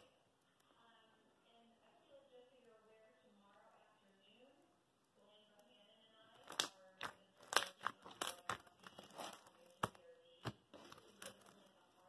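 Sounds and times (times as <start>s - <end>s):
crunchy slime crackling: 6.3s - 11.8s.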